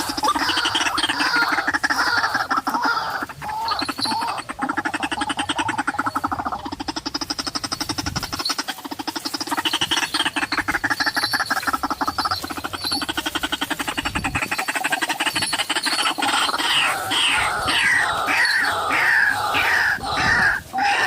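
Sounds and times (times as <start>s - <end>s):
bird croaking call: 0.0s - 21.0s.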